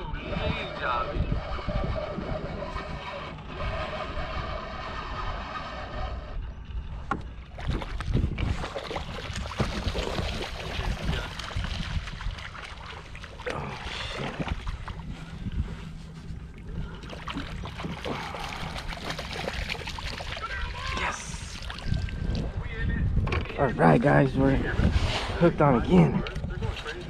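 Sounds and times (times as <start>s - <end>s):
wind rumble on microphone: 0.0s - 27.0s
water sloshing: 6.8s - 22.6s.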